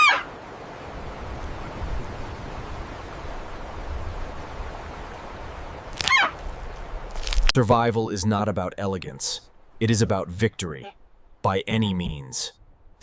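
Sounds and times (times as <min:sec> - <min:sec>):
high-pitched bird cry: 0:00.0 - 0:00.3
river water rushing: 0:00.0 - 0:07.5.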